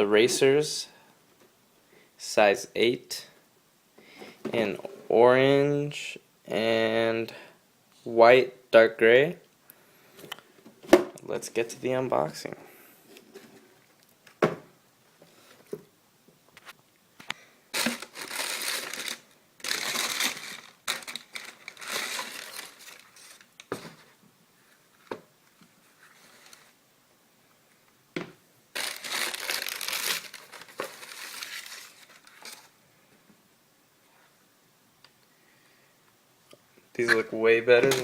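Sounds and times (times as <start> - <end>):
paper wrapping crinkling: 17.7 - 24.8, 25.8 - 26.8, 28.7 - 32.8.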